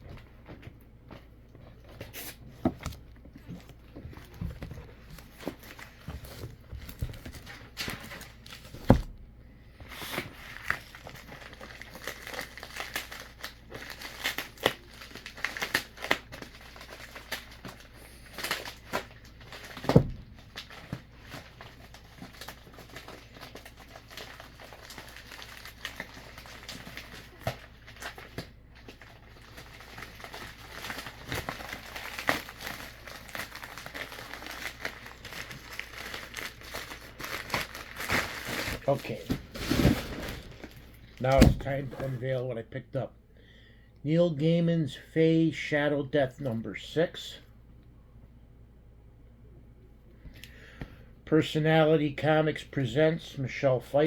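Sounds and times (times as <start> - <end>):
packing material rustling: 9.9 - 42.1.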